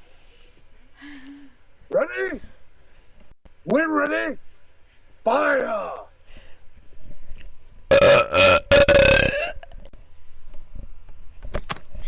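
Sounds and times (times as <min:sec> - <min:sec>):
man belching: 0:07.9 - 0:09.7.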